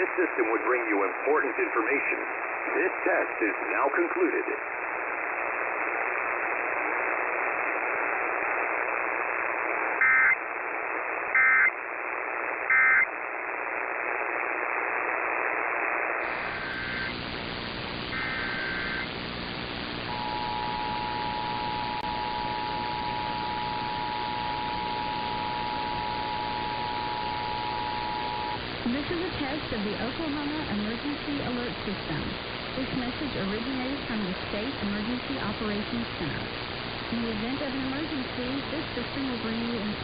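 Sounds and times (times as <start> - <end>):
radio static: 0.0 - 40.0
digital data bursts: 10.0 - 10.4, 11.3 - 11.7, 16.2 - 31.8
two-tone attention signal: 20.1 - 28.6.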